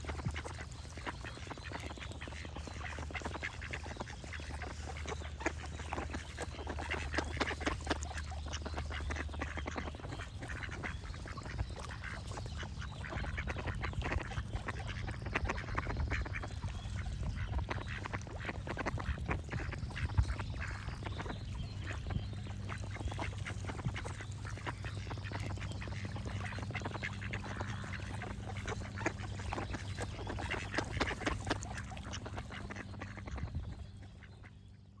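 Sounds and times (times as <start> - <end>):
ducks quacking: 0.0 - 35.0
low steady hum: 0.0 - 35.0.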